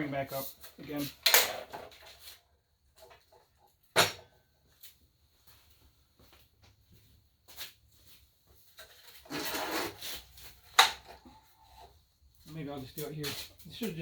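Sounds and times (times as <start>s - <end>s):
rattling metal scrape: 9.2s - 10.3s.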